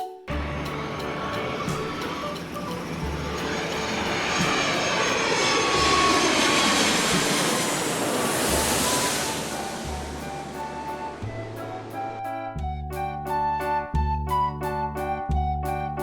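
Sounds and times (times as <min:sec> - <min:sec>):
light background music: 0:00.0 - 0:16.0
jet engine whoosh: 0:00.3 - 0:12.4.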